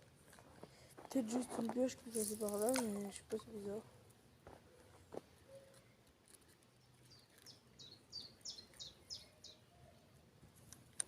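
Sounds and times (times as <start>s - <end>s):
songbird singing faintly: 4.2s - 10.3s.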